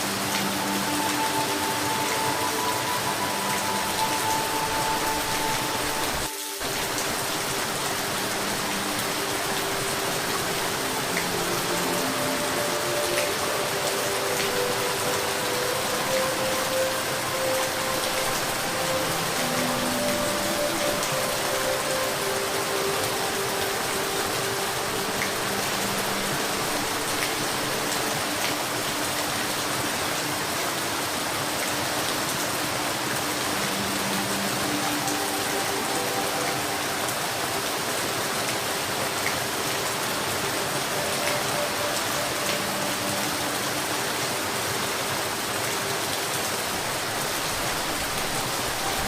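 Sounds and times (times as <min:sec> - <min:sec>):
steady rain hiss: 0:00.0 - 0:49.0.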